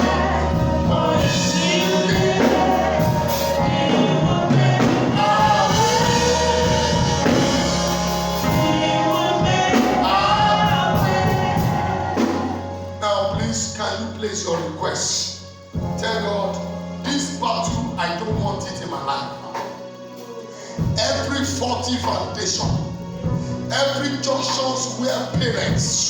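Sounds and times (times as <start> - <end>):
choir singing: 0.0 - 13.8
instrumental accompaniment: 0.0 - 26.0.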